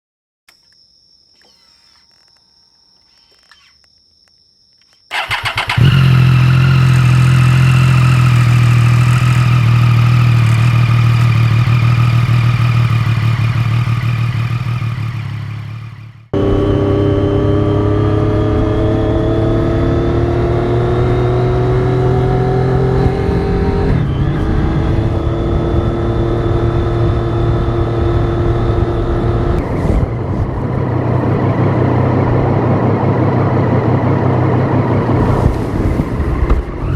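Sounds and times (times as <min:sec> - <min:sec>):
motorcycle engine starting and idling: 0:05.1 - 0:20.5
motorcycle engine revving under way: 0:05.1 - 0:36.9.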